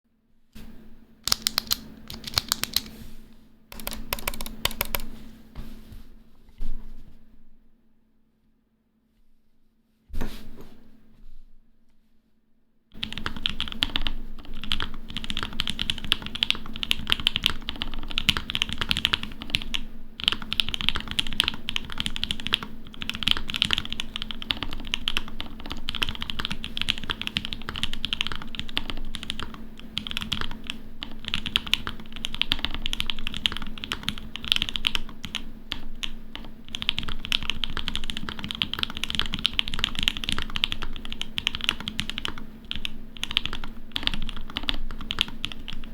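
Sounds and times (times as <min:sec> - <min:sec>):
fast mechanical keyboard typing: 0:01.3 - 0:03.0, 0:03.7 - 0:05.2, 0:13.0 - 0:45.9.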